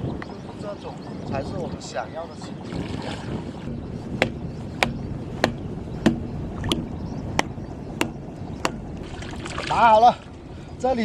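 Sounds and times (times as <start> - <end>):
rush of wind and water: 0.0 - 11.0.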